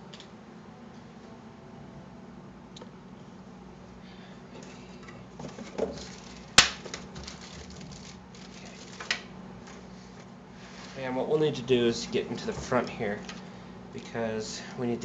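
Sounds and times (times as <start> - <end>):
hands rustling cables: 4.5 - 11.0, 12.4 - 13.5.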